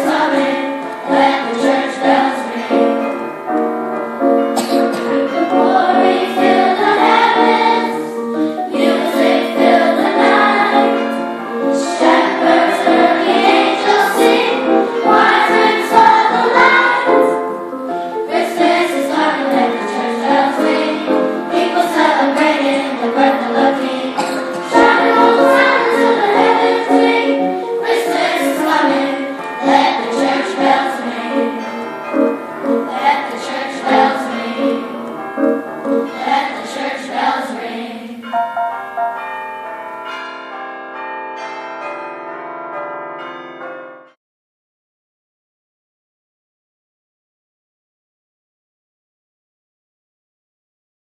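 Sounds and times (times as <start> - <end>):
bells ringing: 0.0 - 37.6, 38.2 - 44.2
children's choir singing: 0.0 - 39.2.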